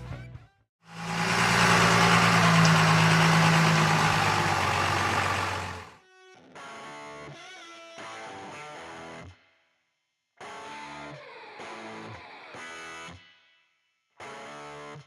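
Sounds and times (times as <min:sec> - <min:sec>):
diesel engine idling: 0:00.9 - 0:05.9.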